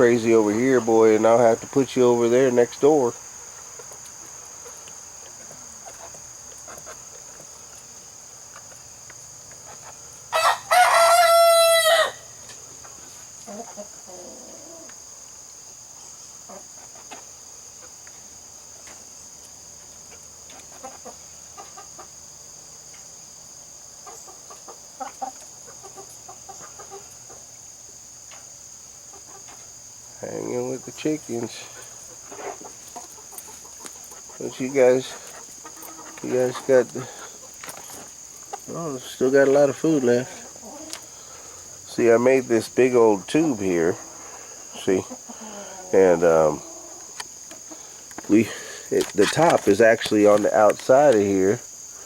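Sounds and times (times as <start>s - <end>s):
chickens clucking: 0.0s - 23.2s, 23.8s - 51.6s
crickets droning: 0.0s - 52.0s
rooster crowing: 10.3s - 12.4s.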